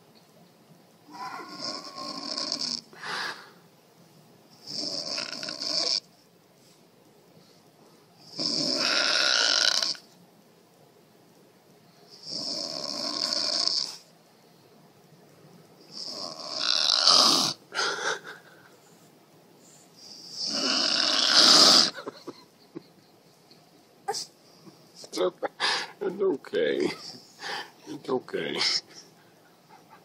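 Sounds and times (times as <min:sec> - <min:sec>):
woman snoring: 0:01.1 - 0:03.5, 0:04.6 - 0:06.0, 0:08.3 - 0:10.0, 0:12.2 - 0:13.9, 0:16.0 - 0:18.0, 0:20.3 - 0:22.0.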